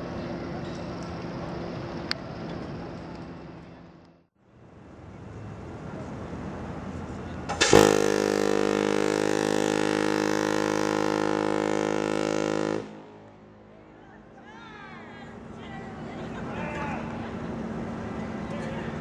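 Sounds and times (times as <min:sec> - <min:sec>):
ship's air horn blast: 0:07.6 - 0:13.7.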